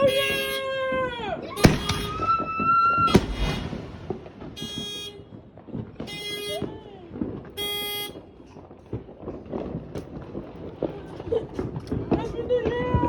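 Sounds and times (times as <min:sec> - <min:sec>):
car horn honking: 0:00.0 - 0:00.7, 0:01.6 - 0:02.4, 0:04.4 - 0:05.4, 0:06.0 - 0:06.7, 0:07.6 - 0:08.3.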